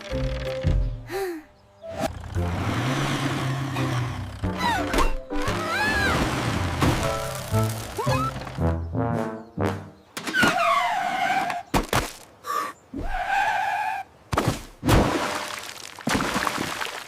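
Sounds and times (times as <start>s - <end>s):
cartoon sliding tone: 8.0s - 8.4s.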